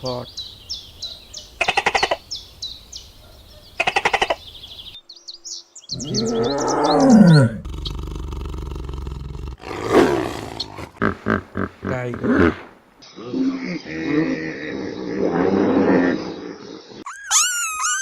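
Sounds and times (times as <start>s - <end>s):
small birds chirping: 0.0s - 18.0s
big cat roaring: 5.9s - 16.8s.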